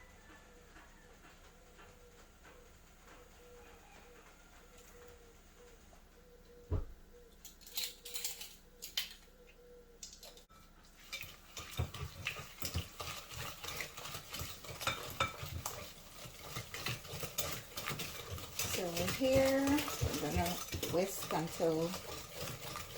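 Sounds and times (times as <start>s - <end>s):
utensils clinking on bowl: 7.4s - 9.2s, 10.0s - 22.9s
whisk beating mixture in bowl: 10.8s - 22.9s.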